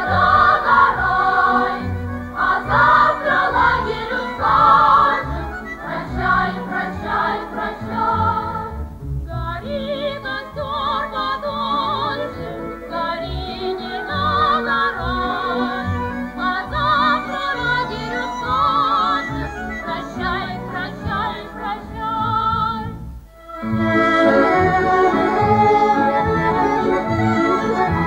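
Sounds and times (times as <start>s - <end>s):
instrumental backing: 0.0s - 28.0s
sustained instrumental chords: 22.9s - 28.0s.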